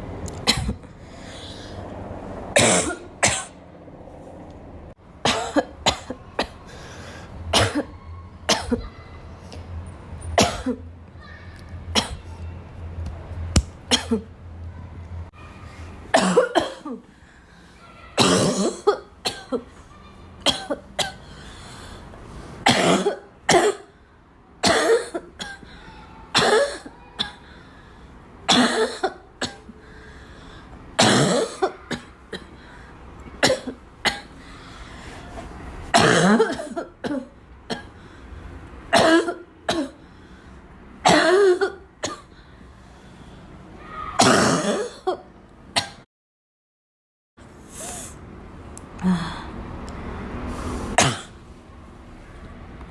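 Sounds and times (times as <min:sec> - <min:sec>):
girl coughing: 0:00.4 - 0:00.8, 0:02.6 - 0:03.6, 0:05.2 - 0:06.6, 0:07.5 - 0:09.0, 0:10.4 - 0:10.9, 0:11.9 - 0:12.3, 0:13.9 - 0:14.3, 0:16.1 - 0:17.1, 0:18.2 - 0:19.8, 0:20.4 - 0:21.3, 0:22.6 - 0:23.9, 0:24.6 - 0:27.5, 0:28.5 - 0:29.8, 0:31.0 - 0:32.6, 0:33.4 - 0:34.4, 0:35.9 - 0:37.9, 0:38.9 - 0:40.0, 0:41.0 - 0:42.3, 0:44.2 - 0:46.0, 0:51.0 - 0:51.4.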